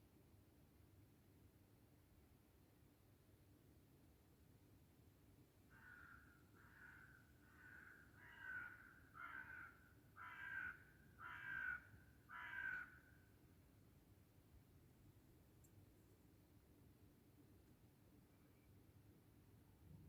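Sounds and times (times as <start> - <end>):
crow cawing: 5.7 - 13.2.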